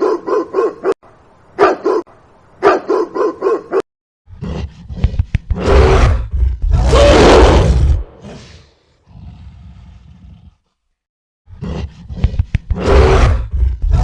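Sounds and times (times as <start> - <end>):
dog barking: 0.0 - 1.0, 1.6 - 3.9
large animal deep roar: 5.7 - 10.7.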